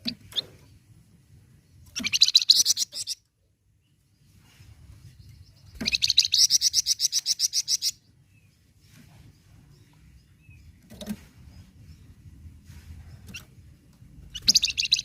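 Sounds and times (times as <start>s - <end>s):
bird chirps and call: 1.7s - 3.3s, 5.0s - 13.7s, 14.3s - 15.0s
songbird trilling: 1.8s - 3.2s, 5.6s - 8.0s, 14.3s - 15.0s.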